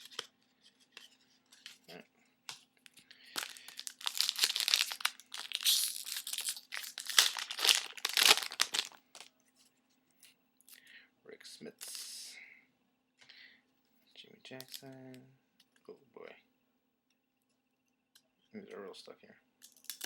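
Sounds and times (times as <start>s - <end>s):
card pack wrapper tearing and crinkling: 2.9s - 9.3s, 19.7s - 20.0s.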